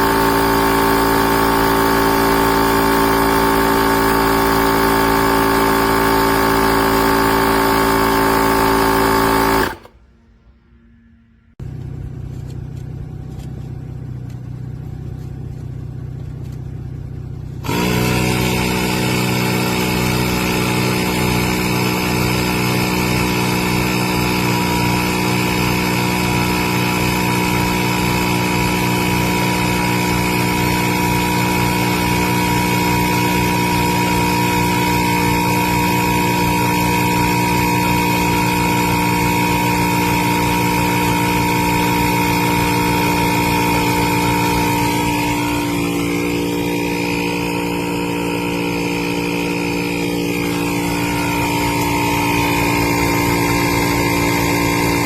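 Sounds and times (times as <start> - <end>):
piston tire inflator running: 0.0 - 10.0, 14.2 - 55.0
quieter machine sound: 0.0 - 12.4, 27.1 - 55.0.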